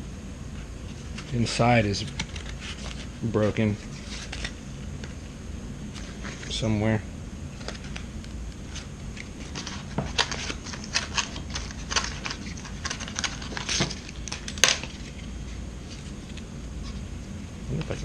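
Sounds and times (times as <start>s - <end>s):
plastic crackling and snapping: 7.6s - 15.2s.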